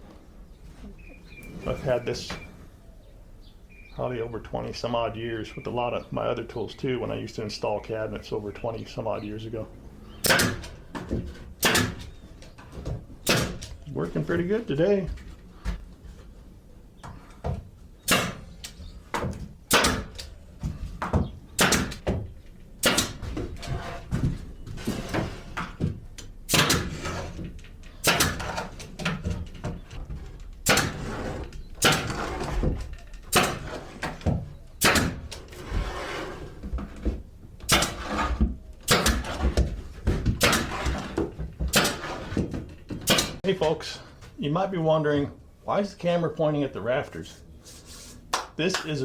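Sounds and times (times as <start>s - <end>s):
pneumatic nailer firing: 10.2s - 10.8s, 11.6s - 12.1s, 13.2s - 13.7s, 18.0s - 18.5s, 19.7s - 20.3s, 21.6s - 22.1s, 22.8s - 23.4s, 26.5s - 27.4s, 28.0s - 28.9s, 30.6s - 32.5s, 33.3s - 34.1s, 34.8s - 35.4s, 37.7s - 39.6s, 40.4s - 41.1s, 41.7s - 42.4s, 43.0s - 43.4s
handling knocks: 36.6s - 43.7s.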